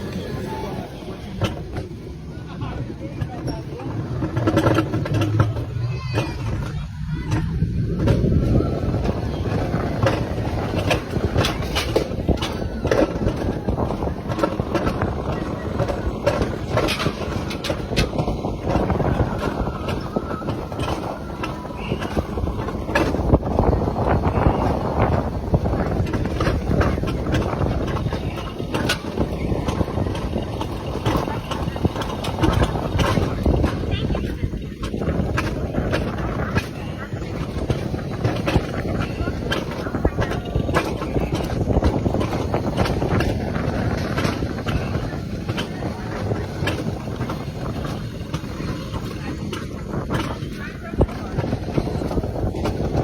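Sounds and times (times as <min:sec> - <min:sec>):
track ride rumbling and rattling: 0:00.0 - 0:53.0
wind buffeting microphone: 0:00.0 - 0:53.0.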